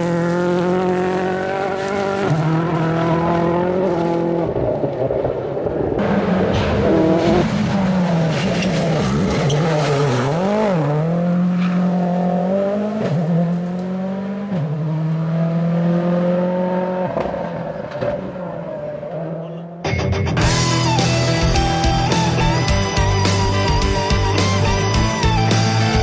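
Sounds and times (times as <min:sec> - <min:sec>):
rally car engine running hard: 0:06.0 - 0:17.4.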